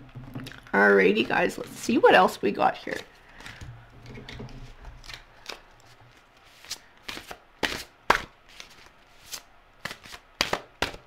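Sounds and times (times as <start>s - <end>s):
cards being shuffled: 2.9s - 11.0s.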